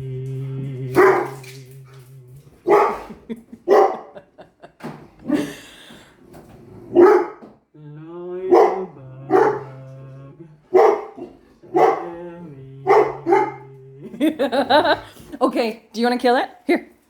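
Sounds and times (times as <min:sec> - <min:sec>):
low drone shifting pitch: 0:00.0 - 0:02.6, 0:07.8 - 0:10.6, 0:12.0 - 0:14.9
dogs barking: 0:01.0 - 0:01.5, 0:02.6 - 0:04.4, 0:06.9 - 0:07.5, 0:08.5 - 0:09.8, 0:10.7 - 0:15.1.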